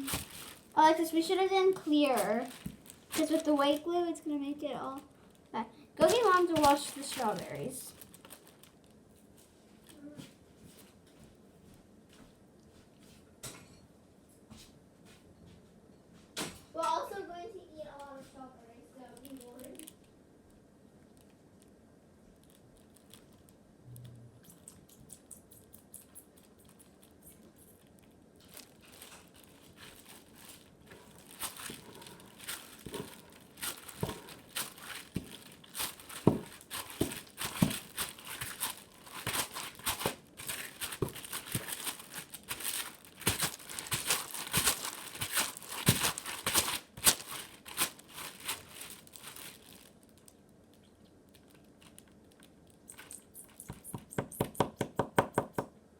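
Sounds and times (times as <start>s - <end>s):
slime crackling being kneaded: 0.0s - 8.8s, 19.0s - 20.0s, 24.4s - 54.7s.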